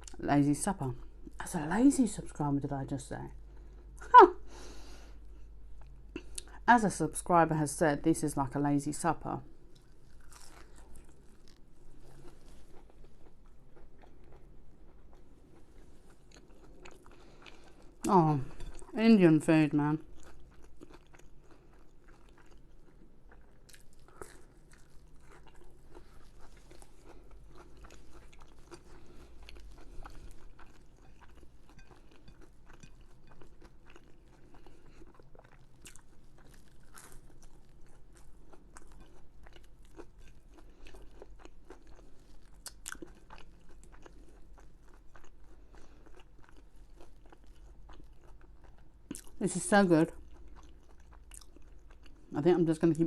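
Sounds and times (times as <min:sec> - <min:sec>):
person chewing crunchy food: 0:09.6 - 0:19.0, 0:20.0 - 0:49.4, 0:50.0 - 0:52.4.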